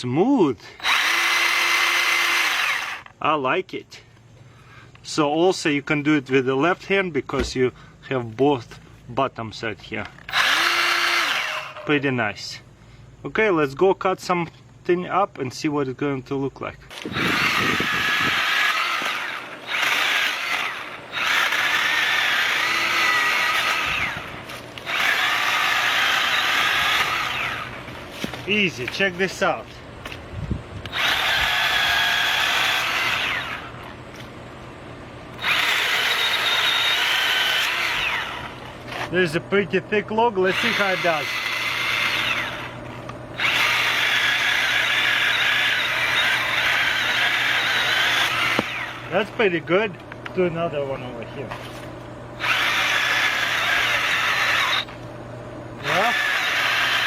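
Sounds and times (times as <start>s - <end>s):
mini chainsaw whining: 0.7s - 3.2s, 10.1s - 12.1s, 16.9s - 30.2s, 30.8s - 34.3s, 35.3s - 39.3s, 40.2s - 49.7s, 52.4s - 55.0s, 55.8s - 57.0s.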